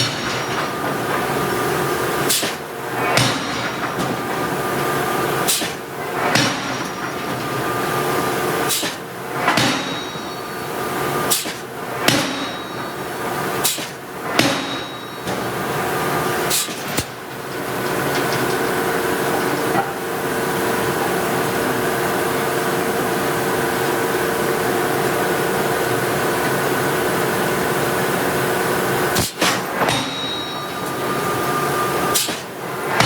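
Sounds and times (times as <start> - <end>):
forging hammer striking steel: 0.0 - 19.2, 29.1 - 33.0.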